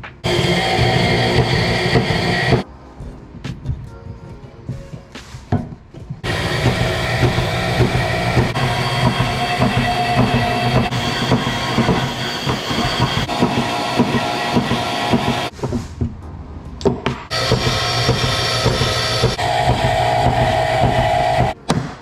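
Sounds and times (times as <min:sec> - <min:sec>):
power tool cutting steel plate: 0:00.2 - 0:02.6, 0:06.2 - 0:15.5, 0:17.3 - 0:21.6.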